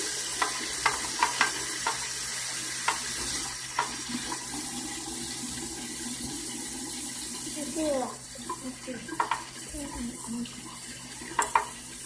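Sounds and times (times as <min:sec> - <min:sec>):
tap water running into sink: 0:00.0 - 0:12.0.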